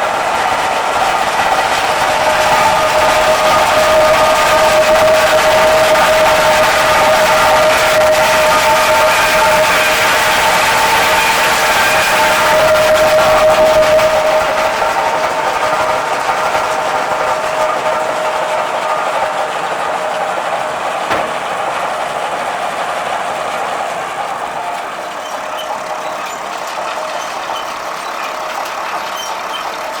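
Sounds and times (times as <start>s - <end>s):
baler whining and rattling: 10.2s - 30.0s
sharp knock: 21.1s - 21.8s.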